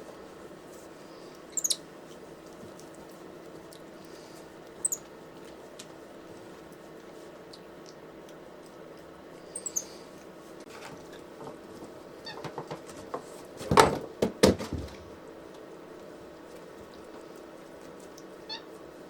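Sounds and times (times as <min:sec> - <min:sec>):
faint steady hum: 0:00.0 - 0:19.0
monkey squeaking: 0:01.5 - 0:01.8, 0:04.8 - 0:05.0, 0:09.6 - 0:09.9
crackling and rustling: 0:10.1 - 0:19.0.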